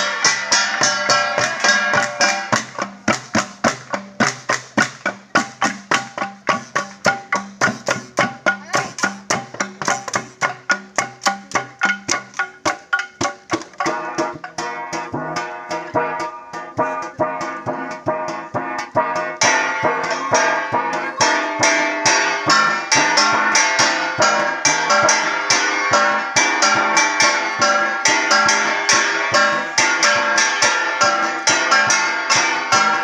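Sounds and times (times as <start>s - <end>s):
gong ensemble playing: 13.8s - 33.0s.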